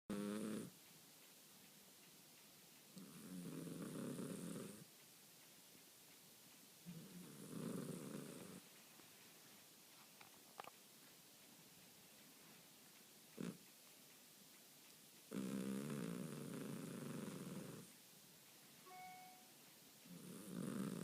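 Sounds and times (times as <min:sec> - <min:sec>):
cat snoring: 0:00.1 - 0:00.8, 0:03.0 - 0:04.9, 0:06.9 - 0:08.6, 0:13.4 - 0:13.6, 0:15.3 - 0:17.9, 0:20.1 - 0:21.0.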